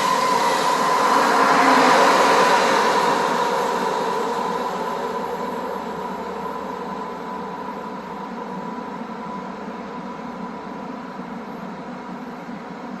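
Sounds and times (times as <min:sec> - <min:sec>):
electric train rumbling on rails: 0:00.0 - 0:13.0
high whine of train: 0:00.0 - 0:13.0.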